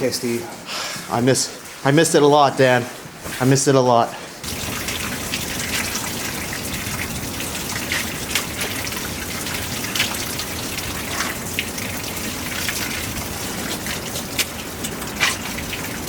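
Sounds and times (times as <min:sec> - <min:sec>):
steady rain falling: 0:04.4 - 0:16.0.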